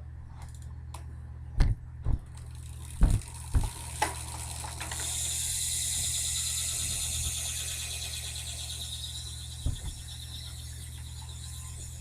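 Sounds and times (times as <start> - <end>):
bicycle freewheel ratcheting clicks: 2.4 - 12.0
dull thumps of bike handling: 3.0 - 3.8.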